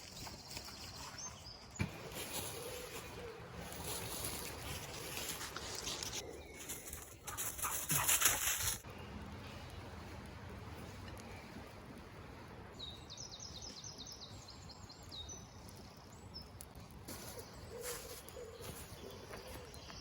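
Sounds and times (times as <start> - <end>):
campfire crackling and popping: 13.6 - 18.4.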